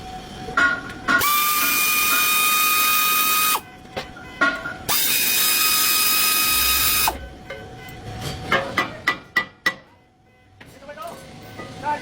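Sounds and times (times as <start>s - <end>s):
power tool motor whining: 1.2s - 3.6s, 4.9s - 7.2s.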